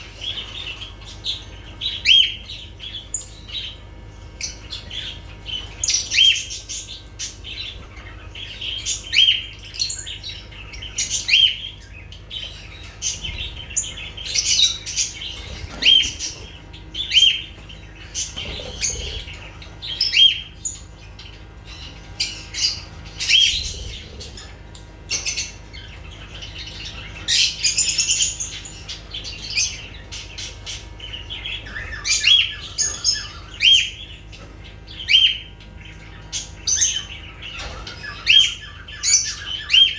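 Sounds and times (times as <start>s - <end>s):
lovebirds chirping and squawking: 0.0s - 39.9s.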